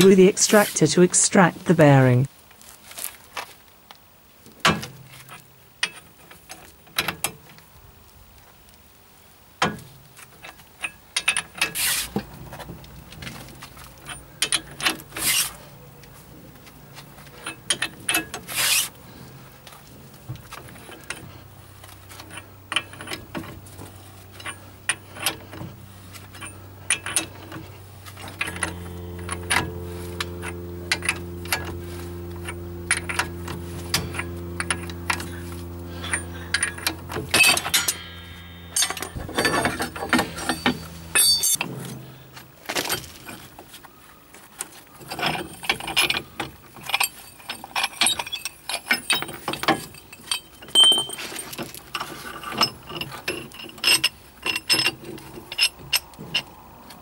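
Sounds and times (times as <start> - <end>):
low steady hum: 0.0 - 2.3, 19.0 - 44.0
ratchet clicking: 24.4 - 41.7
metal tools clinking: 36.0 - 41.7, 46.9 - 51.7.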